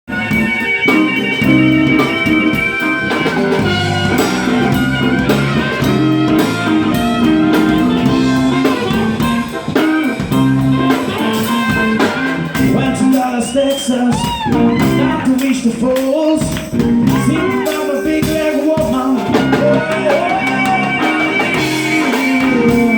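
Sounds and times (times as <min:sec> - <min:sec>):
electric guitar: 0:00.1 - 0:22.9
live blues band playing: 0:00.1 - 0:22.9.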